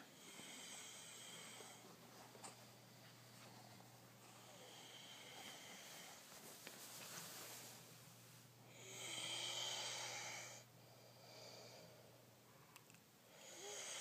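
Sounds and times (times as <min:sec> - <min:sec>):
people snoring: 0:08.8 - 0:10.6, 0:13.3 - 0:14.0.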